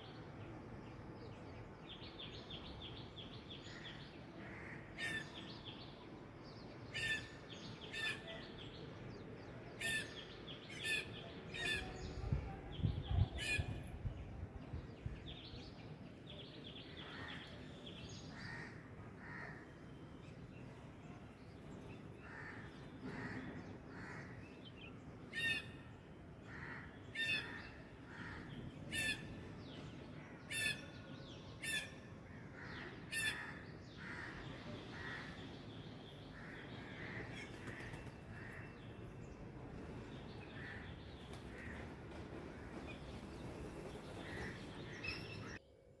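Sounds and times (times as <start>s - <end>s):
loud bird calls: 31.6s - 45.6s.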